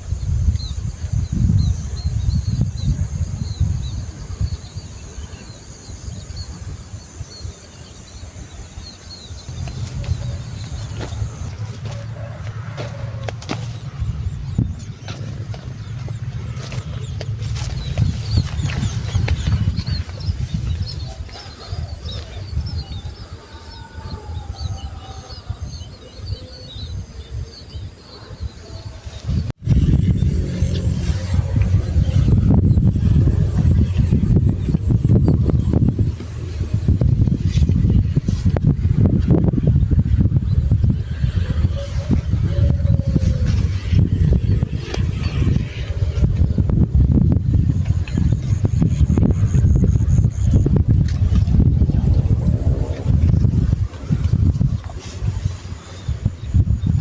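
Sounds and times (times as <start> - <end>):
small birds chirping: 0.0 - 57.0
low rumble: 29.4 - 57.0.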